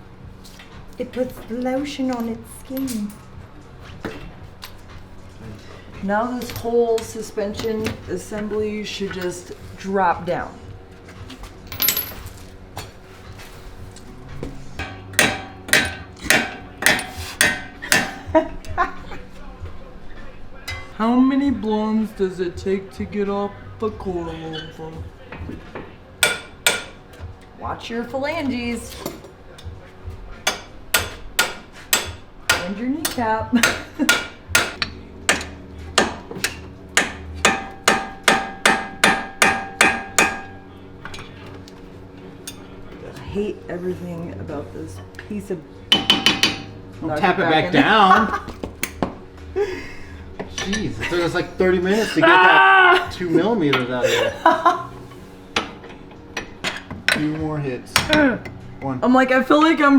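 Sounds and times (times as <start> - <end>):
hammer striking metal: 14.8 - 18.3, 26.2 - 27.0, 30.4 - 41.3, 45.9 - 46.8.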